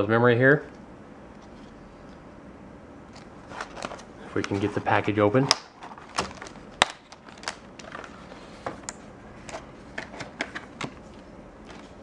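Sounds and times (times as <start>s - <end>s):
plastic packaging clicks and crackles: 5.5s - 8.2s.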